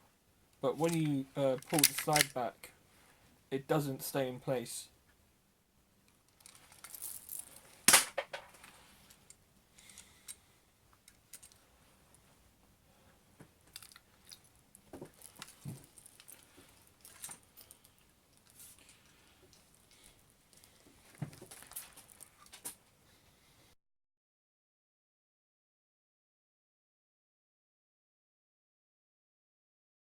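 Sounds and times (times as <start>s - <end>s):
airsoft pistol metal clicks: 1.6s - 2.4s
loud sharp pistol snap: 7.9s - 8.4s.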